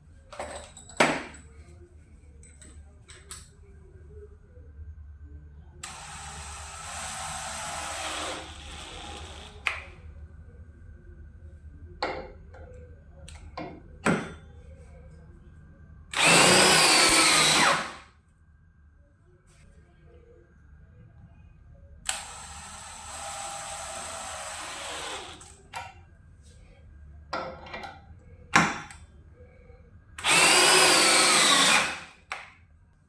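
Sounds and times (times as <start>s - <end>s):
cordless hammer drill running: 5.8s - 9.6s, 16.2s - 18.0s, 22.1s - 25.5s, 30.2s - 32.0s.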